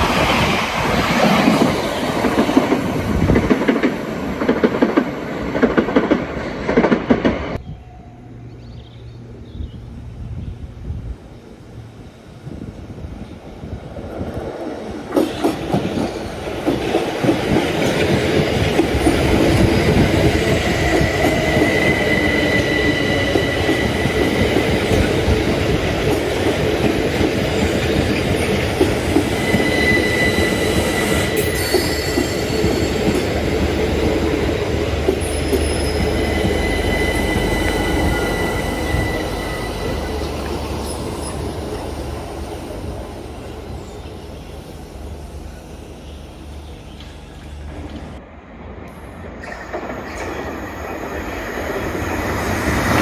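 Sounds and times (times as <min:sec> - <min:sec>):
electric train running on rails: 0:00.0 - 0:08.5, 0:09.3 - 0:53.0
high wheel squeal: 0:18.9 - 0:25.1, 0:28.4 - 0:34.1, 0:35.2 - 0:47.8.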